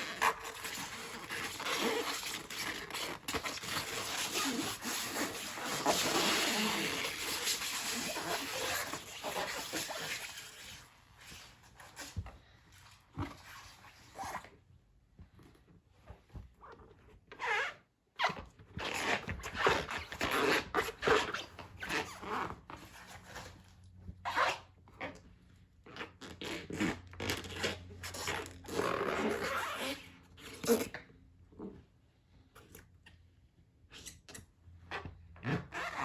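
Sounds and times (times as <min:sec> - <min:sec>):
rubber waders squeaking: 0:00.0 - 0:12.5.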